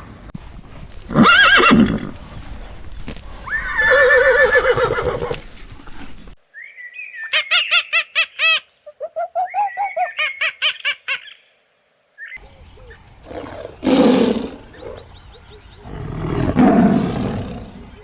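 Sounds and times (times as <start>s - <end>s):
horse whinnying: 1.1s - 2.2s, 3.4s - 5.4s.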